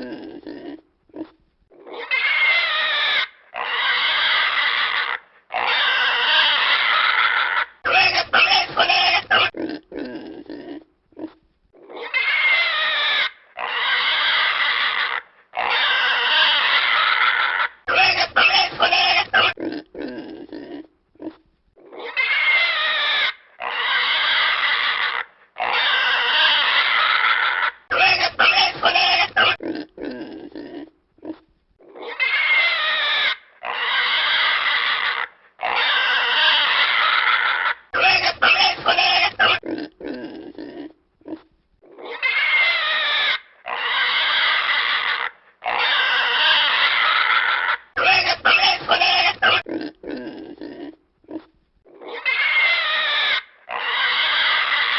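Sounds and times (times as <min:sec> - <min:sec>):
pig grunting: 0:00.0 - 0:54.9
pig squealing: 0:00.0 - 0:54.9.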